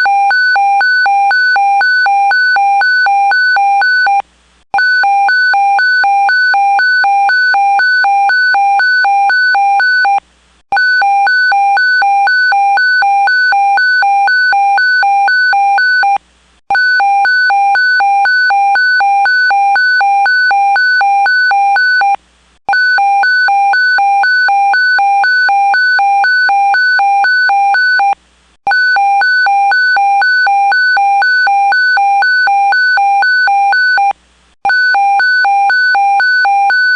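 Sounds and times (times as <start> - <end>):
rapid electronic alarm beeping: 0.0 - 4.2, 4.8 - 10.2, 10.8 - 36.9.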